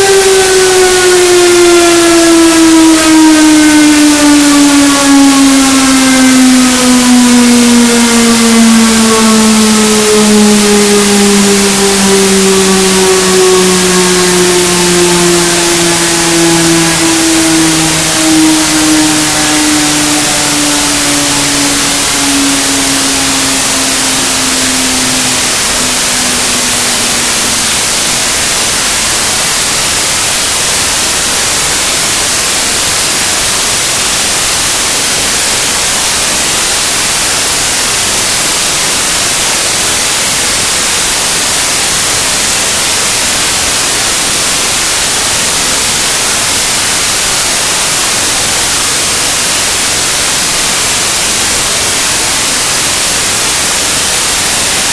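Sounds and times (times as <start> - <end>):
falling pitched drone: 0.0 - 32.6
harsh static hiss: 22.9 - 54.9.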